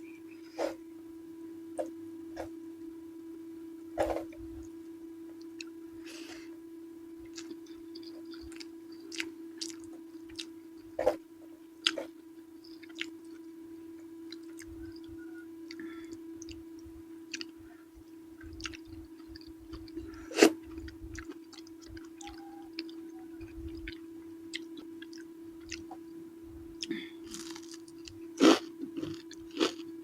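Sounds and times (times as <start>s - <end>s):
low hum: 0.0s - 30.0s
wet chewing: 18.4s - 20.0s.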